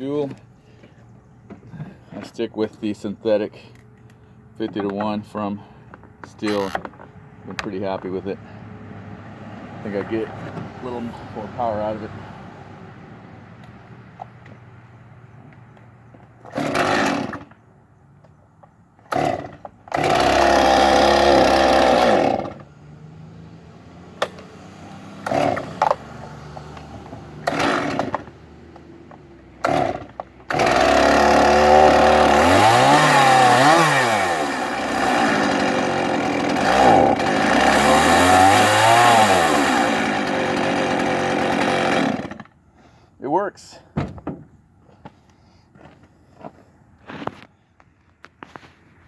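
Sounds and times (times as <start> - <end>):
chainsaw starting and running: 16.4 - 17.7, 19.0 - 23.3, 24.0 - 42.6.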